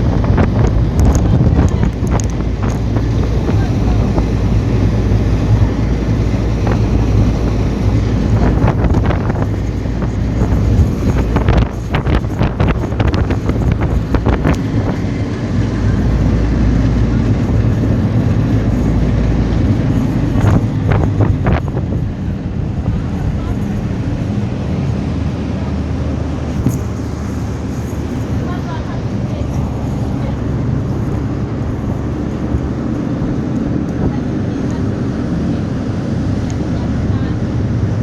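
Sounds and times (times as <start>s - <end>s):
boat engine droning: 0.0s - 38.0s
wind buffeting microphone: 0.0s - 38.0s.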